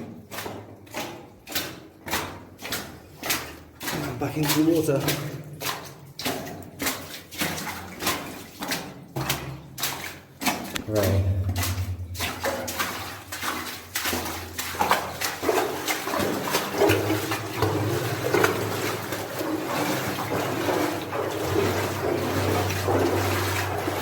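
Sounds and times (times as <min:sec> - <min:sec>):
wading through water: 0:00.0 - 0:24.0
water splashing and swishing: 0:00.0 - 0:24.0.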